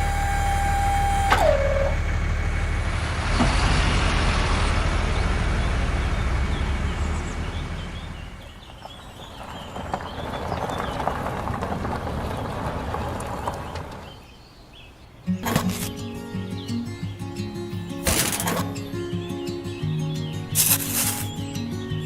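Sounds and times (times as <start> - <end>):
small motor whine: 0.0 - 2.2
low engine-like rumble: 0.0 - 14.2.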